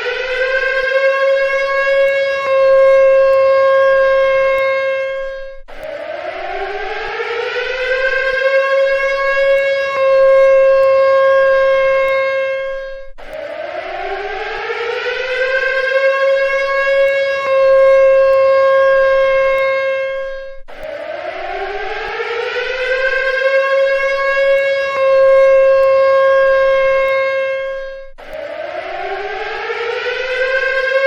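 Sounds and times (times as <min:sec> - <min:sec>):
civil defense siren wailing: 0:00.0 - 0:31.0.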